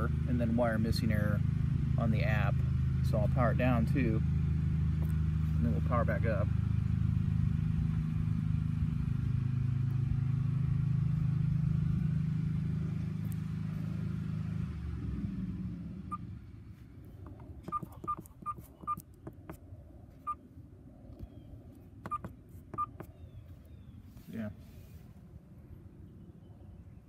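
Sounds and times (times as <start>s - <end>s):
low motor hum: 0.0s - 27.0s
short keypad beeps: 17.7s - 19.0s, 22.1s - 23.0s.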